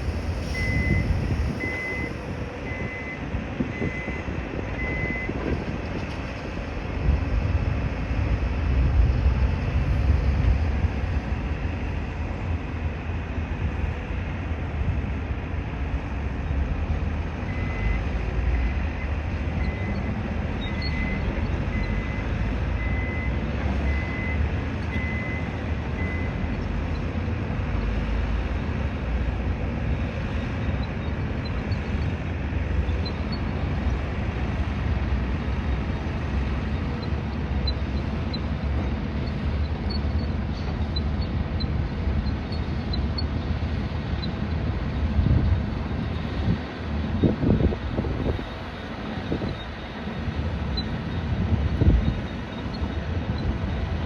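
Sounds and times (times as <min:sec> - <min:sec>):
heavy vehicle engine rumbling: 0:00.0 - 0:54.0
reversing alarm beeping: 0:00.4 - 0:05.4, 0:18.6 - 0:26.4.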